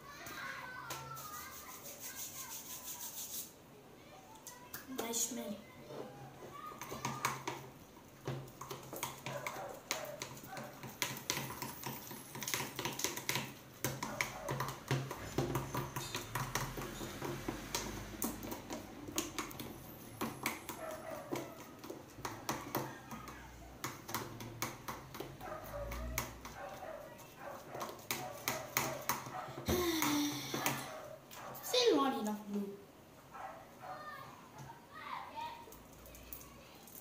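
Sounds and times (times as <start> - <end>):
utensil clicking in a bowl: 8.5 - 26.8.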